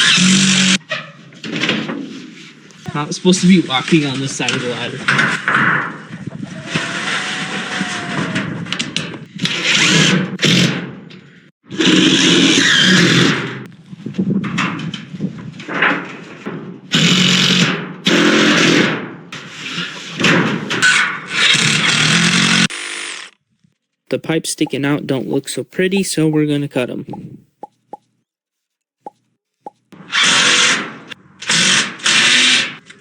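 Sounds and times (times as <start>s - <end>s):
power drill driving screws: 0.0s - 0.8s, 9.4s - 10.1s, 21.3s - 23.4s, 30.1s - 30.8s, 31.4s - 32.8s.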